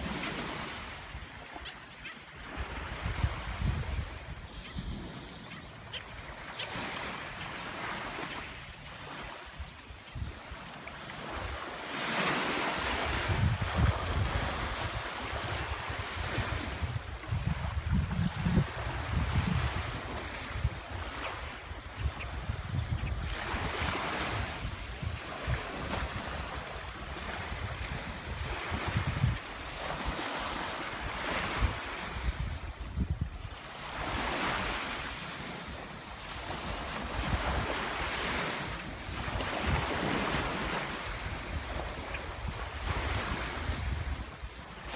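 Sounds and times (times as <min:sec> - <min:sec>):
wind buffeting microphone: 0:02.4 - 0:06.0, 0:12.8 - 0:30.2, 0:31.0 - 0:34.8, 0:37.0 - 0:44.5.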